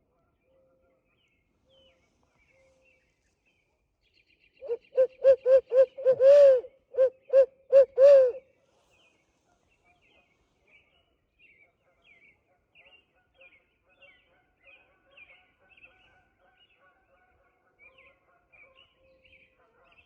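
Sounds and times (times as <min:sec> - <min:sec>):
owl hooting call: 0:04.6 - 0:08.4.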